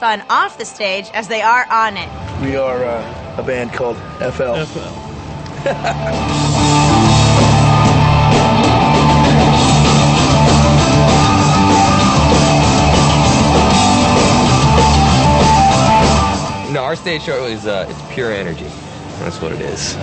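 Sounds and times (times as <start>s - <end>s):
hard rock music: 0.0s - 20.0s.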